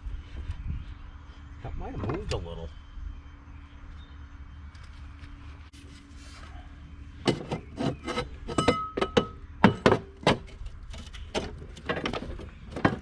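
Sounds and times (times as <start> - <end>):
metal clanks and knocks: 7.2 - 13.0.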